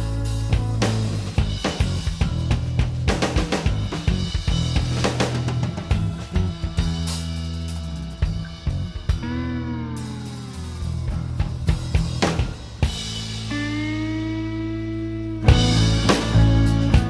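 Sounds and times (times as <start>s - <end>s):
drum kit: 0.0s - 14.5s, 15.4s - 17.0s
rock music: 0.0s - 17.0s
bending guitar notes: 5.3s - 11.9s, 13.5s - 17.0s.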